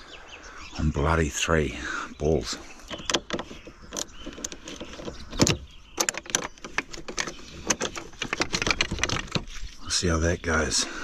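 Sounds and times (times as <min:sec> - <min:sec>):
clicks knocks and rattles: 0:02.8 - 0:09.7.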